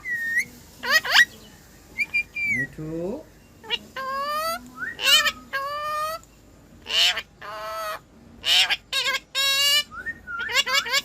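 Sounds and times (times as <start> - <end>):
parrot honking calls and screeches: 0.1 - 1.4, 3.6 - 6.2, 6.8 - 11.0.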